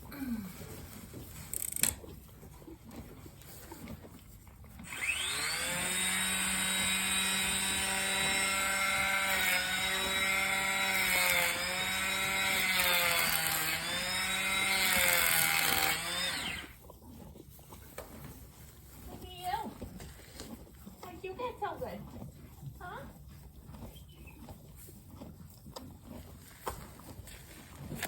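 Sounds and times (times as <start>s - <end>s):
electric hand planer whining: 4.9s - 16.8s.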